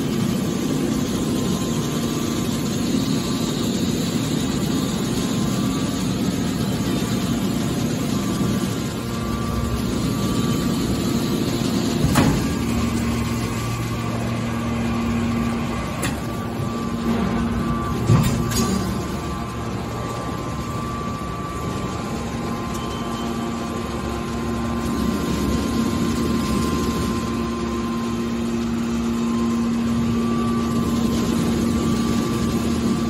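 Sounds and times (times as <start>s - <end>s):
electric motor and pump humming: 0.0s - 33.0s.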